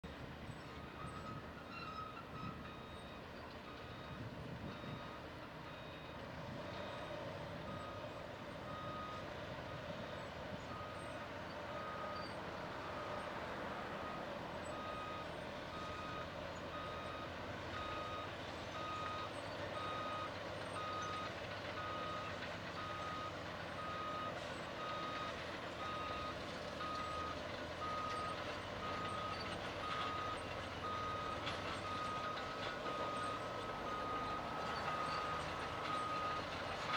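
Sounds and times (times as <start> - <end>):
diesel engine rumble: 0.1 - 36.9.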